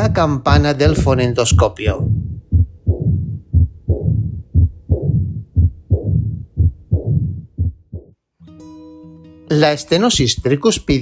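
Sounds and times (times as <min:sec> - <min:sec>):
heart murmur: 0:00.0 - 0:08.2
heartbeat through stethoscope: 0:00.0 - 0:08.2.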